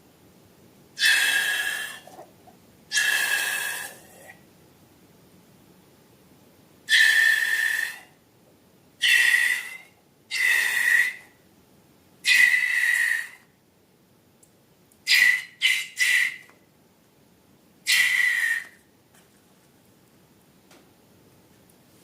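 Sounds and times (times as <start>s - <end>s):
air squealing out of balloon: 1.0s - 2.2s, 2.9s - 4.3s, 9.0s - 11.3s, 12.3s - 13.4s, 15.1s - 16.5s, 17.9s - 18.8s.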